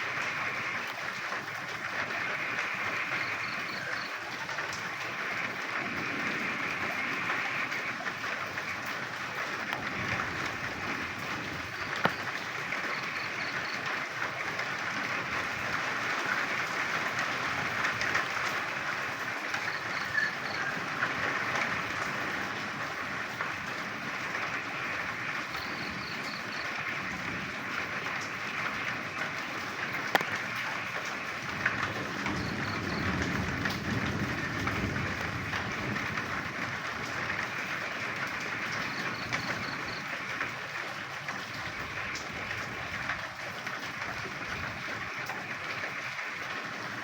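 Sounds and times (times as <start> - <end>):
frogs croaking: 0.0 - 47.0
steady rain: 0.0 - 47.0.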